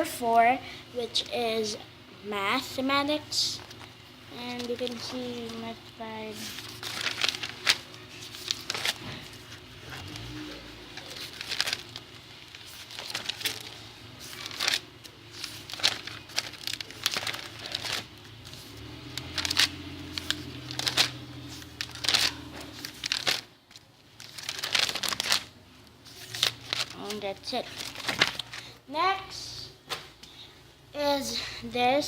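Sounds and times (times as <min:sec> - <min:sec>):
paper pages rustling: 0:03.6 - 0:28.8.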